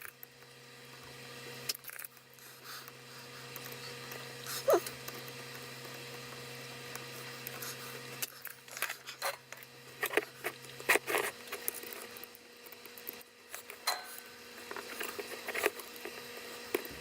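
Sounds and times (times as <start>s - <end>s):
electrical hum: 0.0s - 17.0s
hand tools clicking and scraping: 7.3s - 12.1s, 13.5s - 17.0s.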